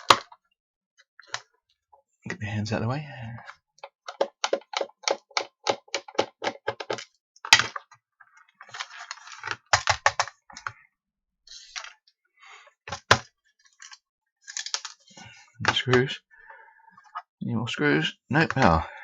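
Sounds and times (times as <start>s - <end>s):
plastic sensor clicks and knocks: 4.0s - 7.0s.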